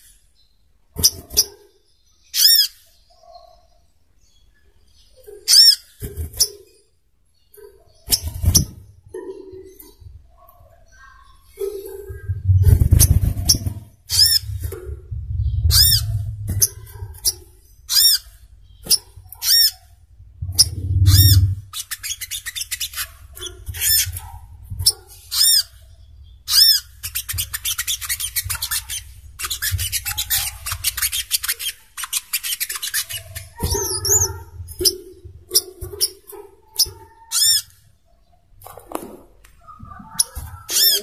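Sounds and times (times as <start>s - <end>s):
low rumble: 12.1s - 17.9s, 20.0s - 21.7s.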